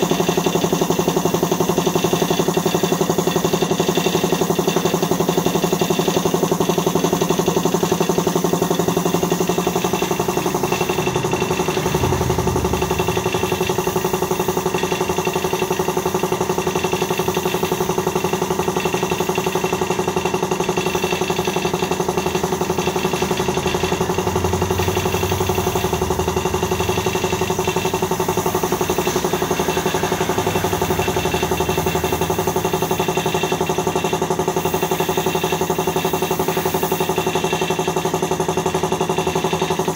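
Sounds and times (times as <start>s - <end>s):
machine motor humming: 6.6s - 37.9s.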